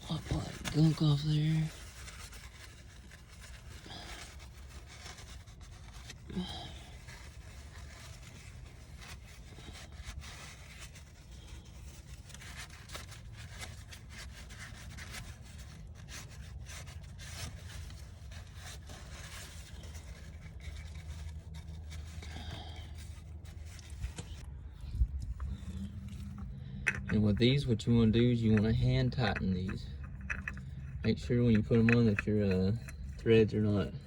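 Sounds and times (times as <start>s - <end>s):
rubbing and scraping on car parts: 0.0s - 34.0s.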